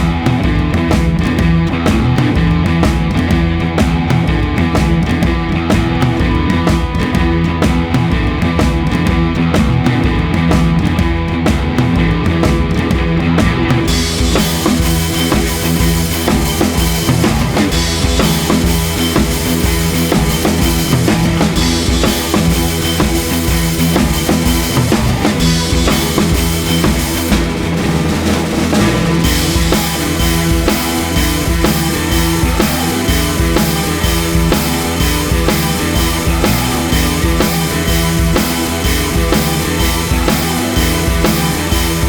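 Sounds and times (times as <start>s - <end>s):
rock music with drum kit: 0.0s - 42.0s
cymbals: 13.9s - 42.0s.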